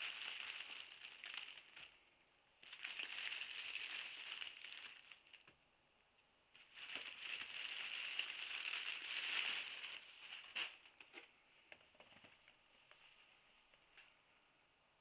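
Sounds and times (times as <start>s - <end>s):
packaging crinkling and rustling: 0.0s - 2.0s, 2.6s - 5.6s, 6.6s - 12.6s.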